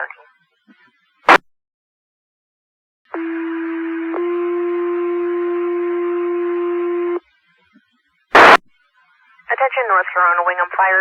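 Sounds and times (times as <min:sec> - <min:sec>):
radio hiss: 0:07.6 - 0:11.0.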